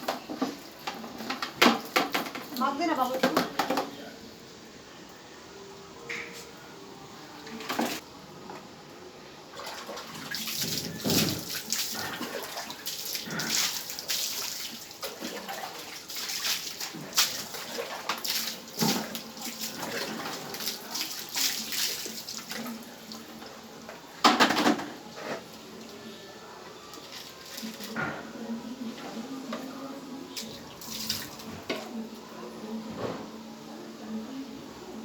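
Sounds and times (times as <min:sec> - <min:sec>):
water splashing in a bathtub: 0:09.5 - 0:23.8, 0:26.9 - 0:28.0, 0:30.4 - 0:32.0.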